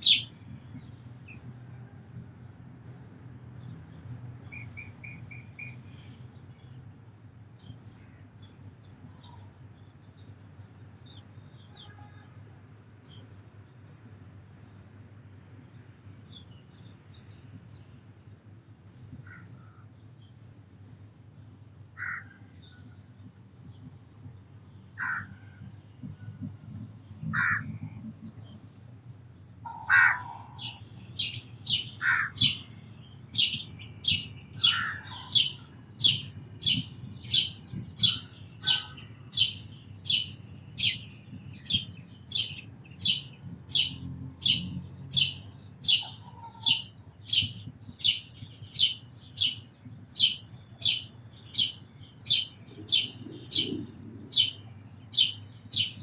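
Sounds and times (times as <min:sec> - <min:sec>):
harsh lower bird calls: 0:00.0 - 0:00.4, 0:29.6 - 0:56.0
sparrow chirping: 0:00.0 - 0:01.4, 0:29.6 - 0:56.0.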